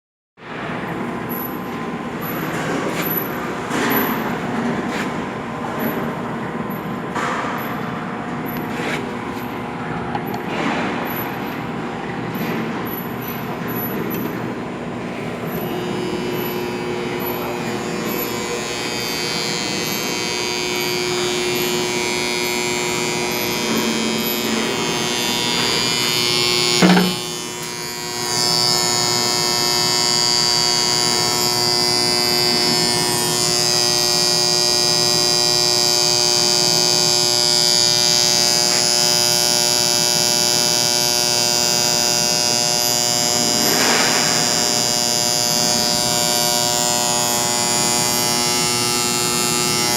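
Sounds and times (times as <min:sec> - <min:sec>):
electrical contactors buzzing: 0:01.0 - 0:49.9
high whine: 0:15.3 - 0:29.4.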